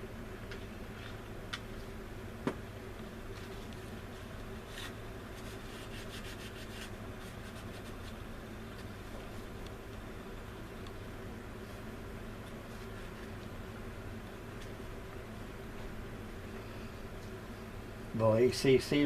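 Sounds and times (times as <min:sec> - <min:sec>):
steady low hum: 0:00.0 - 0:19.0
faint ticks and scratches: 0:03.3 - 0:08.9.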